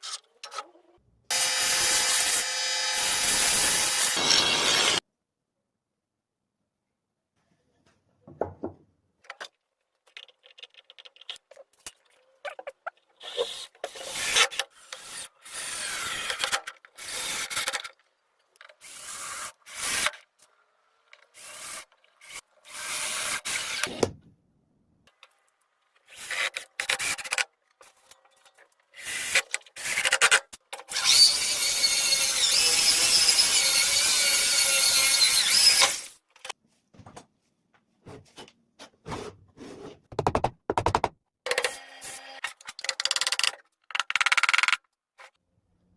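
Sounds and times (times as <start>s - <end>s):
small power tool whining: 1.3s - 5.0s.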